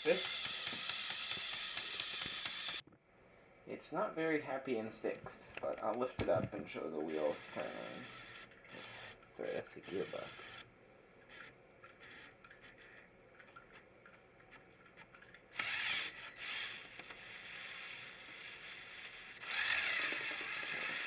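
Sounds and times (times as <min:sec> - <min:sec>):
plastic gear train whirring: 0:00.0 - 0:02.8, 0:05.6 - 0:10.6, 0:11.3 - 0:13.8, 0:14.4 - 0:21.0.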